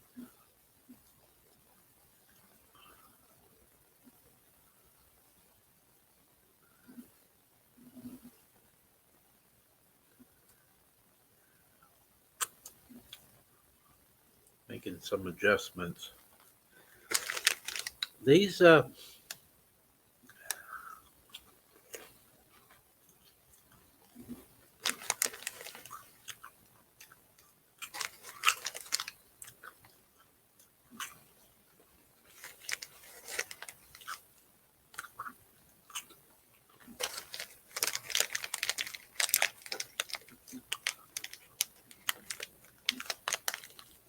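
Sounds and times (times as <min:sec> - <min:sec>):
person chewing crunchy snacks: 0:17.0 - 0:18.2, 0:21.3 - 0:22.8, 0:24.2 - 0:31.3, 0:32.2 - 0:34.4, 0:35.0 - 0:44.0.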